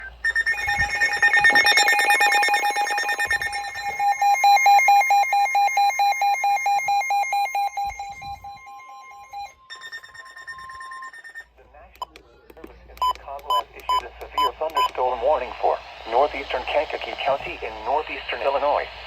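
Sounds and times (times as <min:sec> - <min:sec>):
fast pulsing electronic beep: 0:00.0 - 0:11.5, 0:13.0 - 0:15.0
steady high warning tone: 0:00.0 - 0:11.5.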